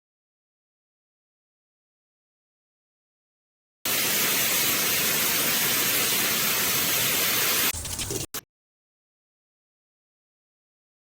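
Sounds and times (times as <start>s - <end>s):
shower water spraying: 3.9s - 8.3s.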